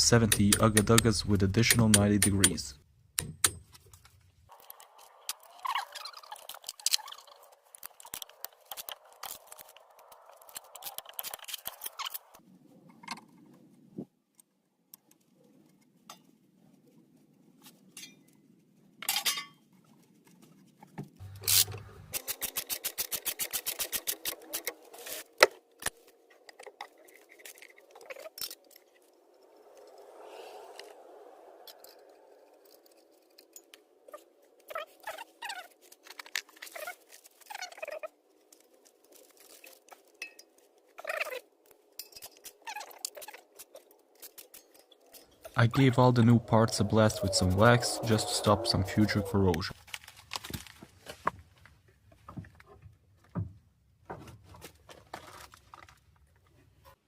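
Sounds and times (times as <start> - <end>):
metallic clicks and knocks: 0.0 - 4.2.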